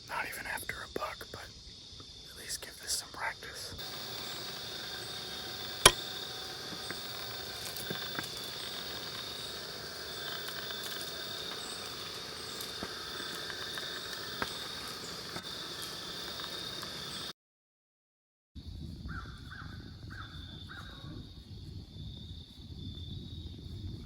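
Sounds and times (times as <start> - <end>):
crickets chirping: 0.0 - 17.3, 18.6 - 24.0
faint clicks: 3.8 - 17.3.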